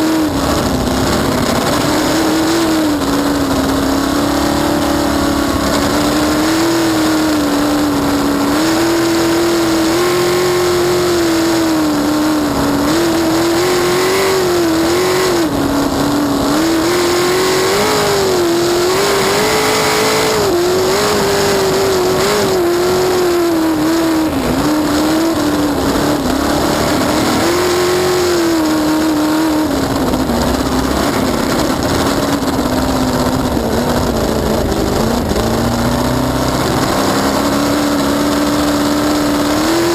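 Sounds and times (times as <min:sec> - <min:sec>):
race boat engine running hard: 0:00.0 - 0:39.9
rush of wind and water: 0:00.0 - 0:39.9.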